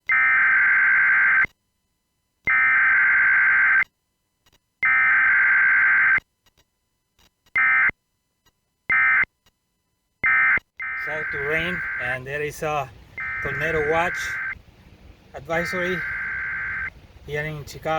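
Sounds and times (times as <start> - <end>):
electronic alarm buzzer beeps: 0.1 - 1.5, 2.5 - 3.9, 4.8 - 6.2, 7.6 - 7.9, 8.9 - 9.2, 10.2 - 12.2, 13.2 - 14.6, 15.6 - 16.9.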